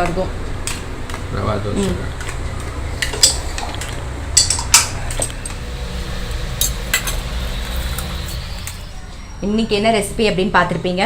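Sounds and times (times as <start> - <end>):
low steady hum: 2.7 - 10.4
utensils clinking against dishes: 4.4 - 9.0.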